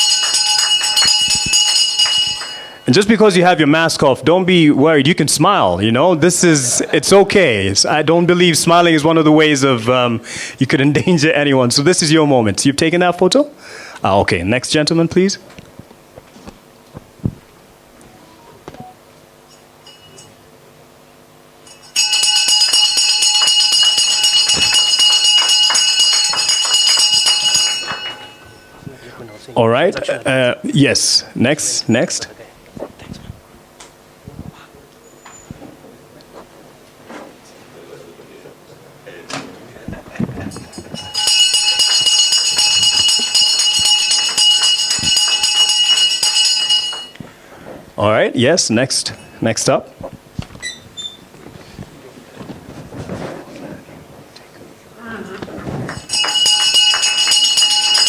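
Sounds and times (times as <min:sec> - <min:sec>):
continuous metallic bell ringing: 0:00.0 - 0:03.4, 0:19.5 - 0:20.4, 0:21.6 - 0:28.8, 0:40.4 - 0:47.2, 0:55.9 - 0:58.0.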